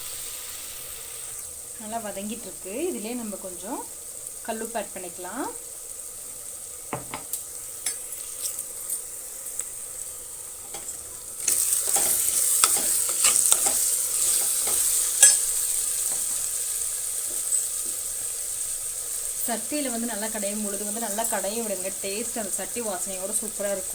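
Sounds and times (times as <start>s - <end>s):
onions sizzling in oil: 0.0s - 23.9s
spatula stirring and scraping: 7.9s - 9.1s, 10.6s - 16.4s.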